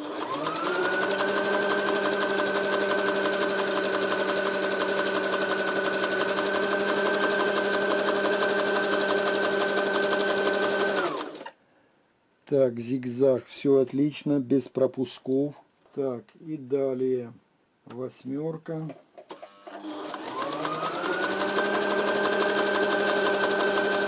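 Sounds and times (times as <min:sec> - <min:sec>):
sewing machine motor whine: 0:00.0 - 0:11.5, 0:19.3 - 0:24.0.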